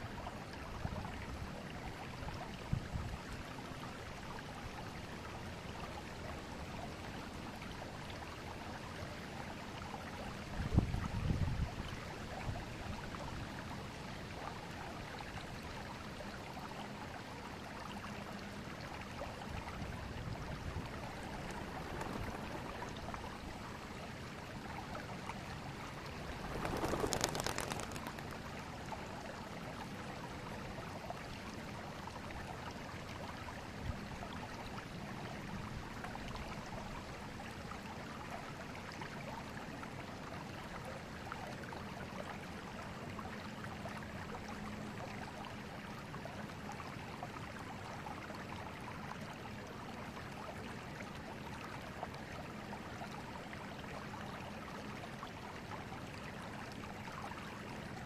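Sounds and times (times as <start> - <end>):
river water flowing: 0.0 - 11.0, 11.6 - 58.0.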